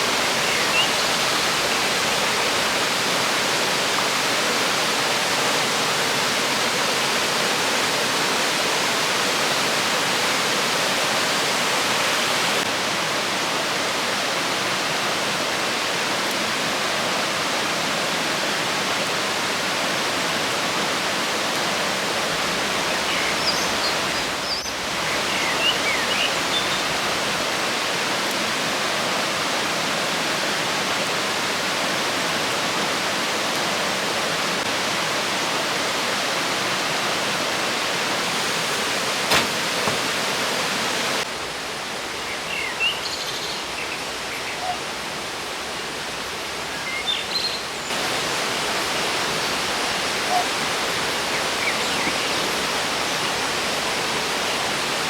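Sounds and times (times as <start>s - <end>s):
river rushing over rocks: 0.0s - 23.2s, 33.9s - 42.6s.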